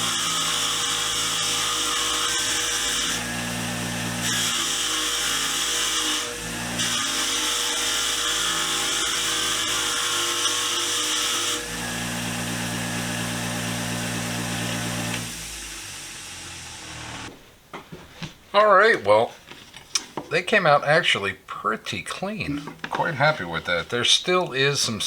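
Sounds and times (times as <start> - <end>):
wire wheel motor hum: 11.7 - 17.3
motor winding down: 11.8 - 17.3.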